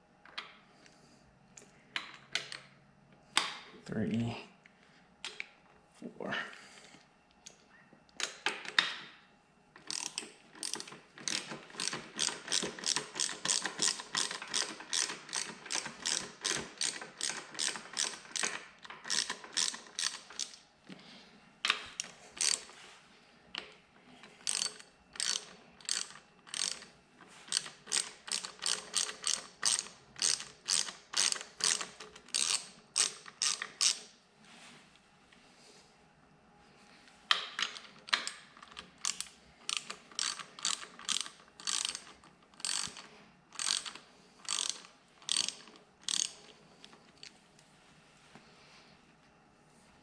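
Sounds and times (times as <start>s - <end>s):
ratchet wrench clicking: 9.9s - 20.6s, 22.4s - 22.7s, 24.4s - 26.9s, 27.5s - 34.1s, 39.0s - 46.5s.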